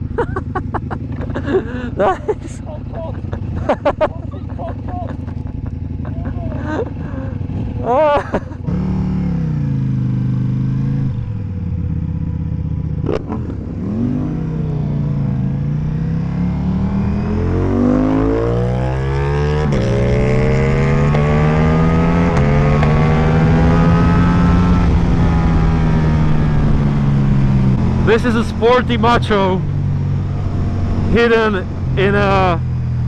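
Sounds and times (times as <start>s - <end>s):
motorcycle engine accelerating: 0.0s - 33.0s.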